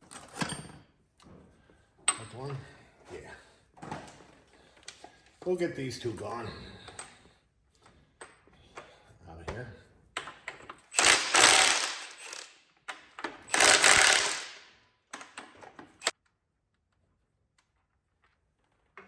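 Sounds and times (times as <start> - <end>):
power tool rattling: 10.8 - 16.1.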